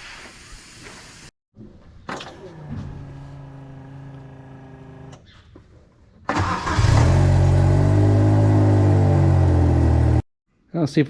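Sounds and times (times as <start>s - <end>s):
loud engine at high speed: 6.8s - 10.2s.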